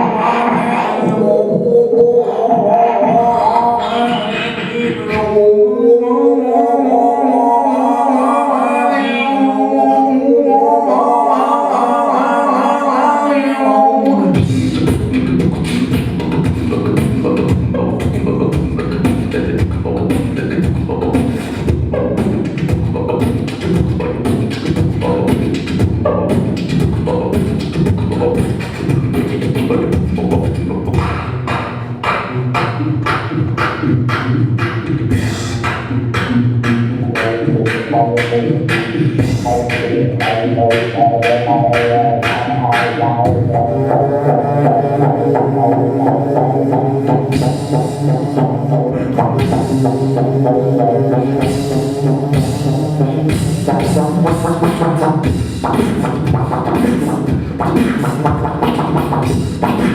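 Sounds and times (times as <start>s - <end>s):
held droning vocal notes: 0.0s - 59.9s
pulsing low vocal bass: 0.0s - 59.9s
beatboxed percussion clicks: 14.0s - 59.9s.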